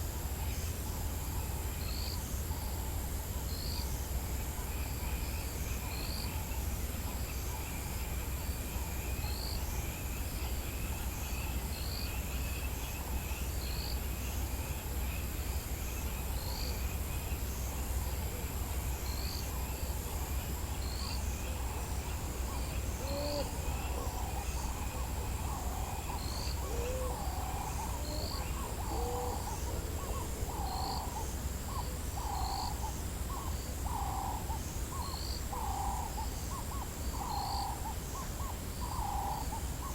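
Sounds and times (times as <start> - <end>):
insects trilling: 7.2 - 39.9
hooting calls: 22.8 - 32.8.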